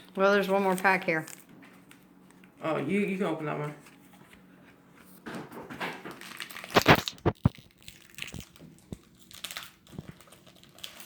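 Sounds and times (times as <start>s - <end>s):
foil wrapper tearing and crinkling: 6.1s - 11.0s.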